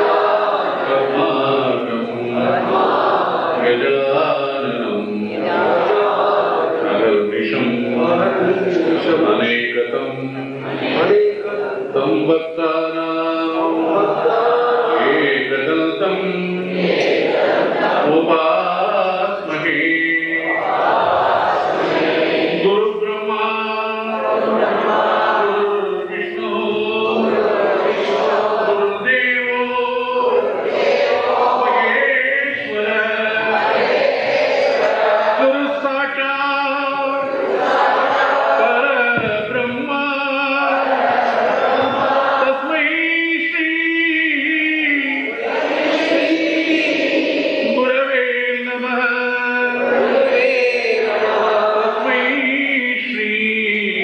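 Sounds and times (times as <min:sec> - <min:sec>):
devotional chanting: 0:00.0 - 0:54.0.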